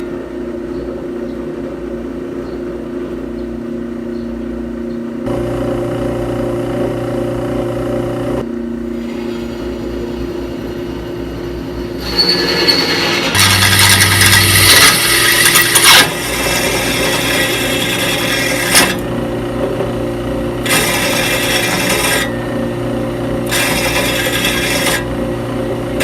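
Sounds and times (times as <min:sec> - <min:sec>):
power tool motor humming: 0:13.2 - 0:19.2.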